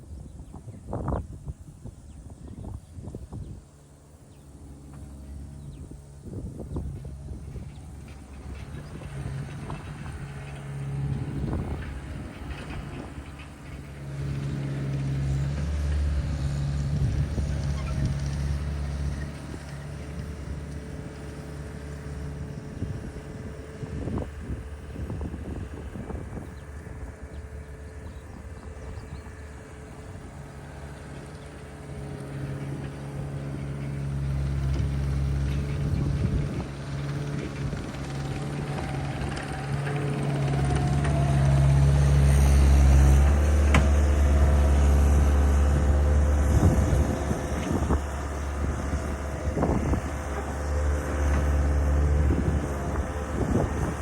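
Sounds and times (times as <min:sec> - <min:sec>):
skid steer engine running: 0:00.0 - 0:54.0
sharp knocks and creaks: 0:34.6 - 0:54.0.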